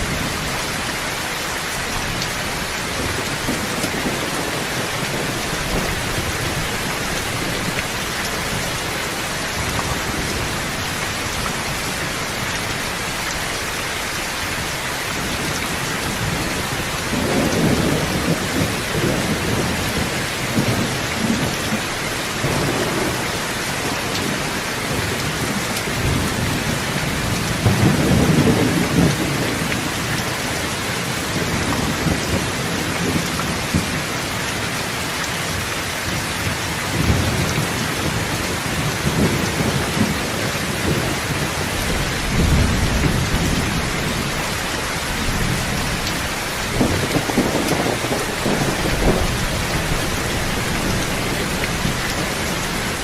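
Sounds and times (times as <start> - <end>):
heavy rain: 0.0 - 53.0
thunder rolling: 37.0 - 53.0.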